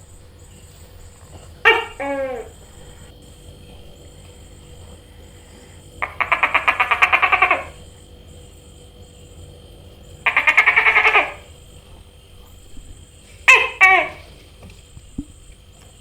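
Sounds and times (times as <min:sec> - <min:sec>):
gecko chirping: 0:05.9 - 0:08.6, 0:10.0 - 0:11.8.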